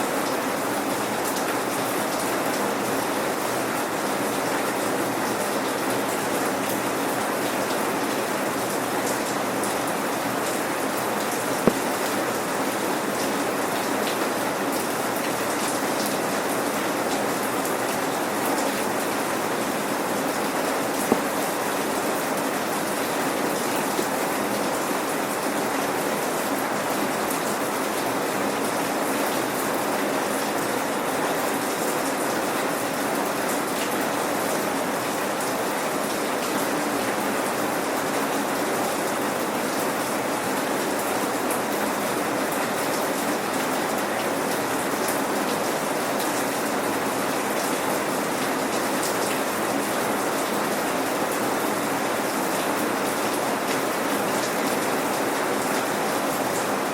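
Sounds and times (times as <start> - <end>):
raindrops pattering on hard surfaces: 5.8 - 23.1.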